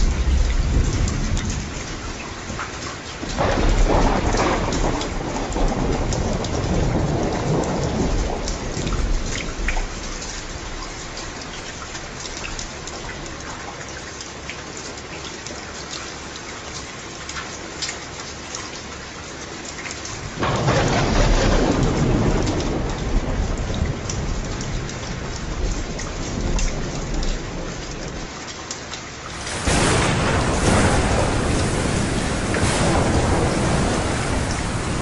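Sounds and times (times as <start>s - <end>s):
thunder rumbling: 0.0s - 11.2s, 20.4s - 28.3s, 29.3s - 35.0s
raindrops ticking: 0.0s - 35.0s
steady rain: 0.0s - 35.0s.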